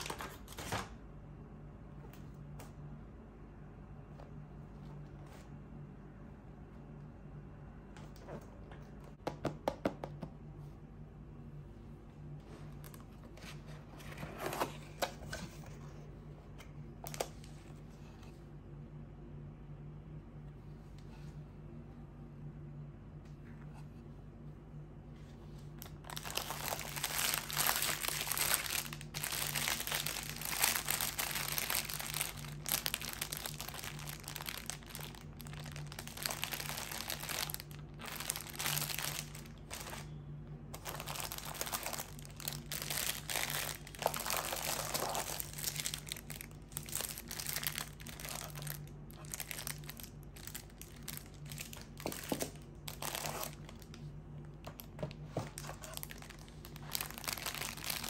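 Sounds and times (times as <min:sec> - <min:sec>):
low steady hum: 0:00.0 - 0:58.0
rustling crinkling noise: 0:40.7 - 0:58.0.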